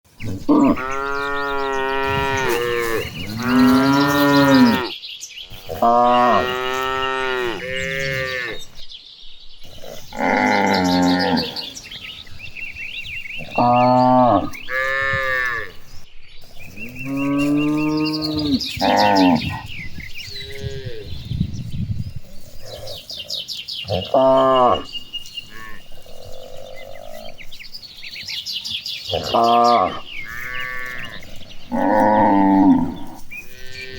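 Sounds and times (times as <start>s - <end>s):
cattle mooing: 0.3s - 4.9s, 5.7s - 8.7s, 9.7s - 11.7s, 29.1s - 33.9s.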